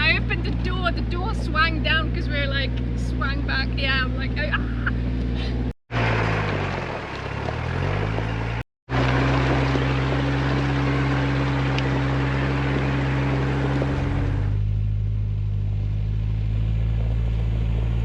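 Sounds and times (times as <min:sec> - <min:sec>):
car engine droning: 0:00.0 - 0:18.0
road noise: 0:00.0 - 0:18.0.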